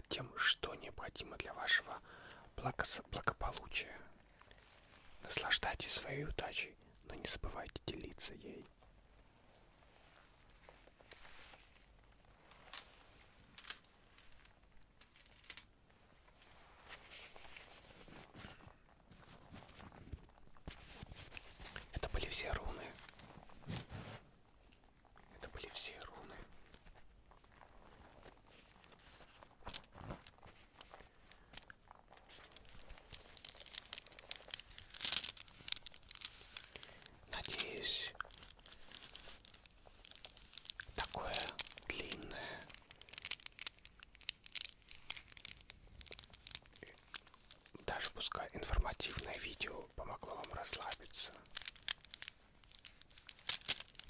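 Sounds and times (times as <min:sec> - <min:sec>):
light rustling: 0:09.7 - 0:54.0
stones clicking: 0:10.3 - 0:54.0.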